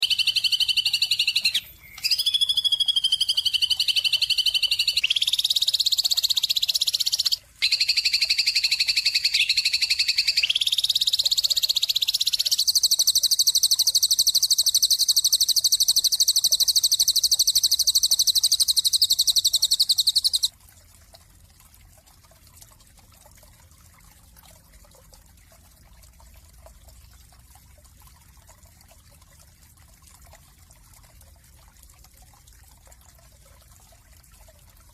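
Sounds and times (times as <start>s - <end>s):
bird trilling song: 0.0s - 20.5s.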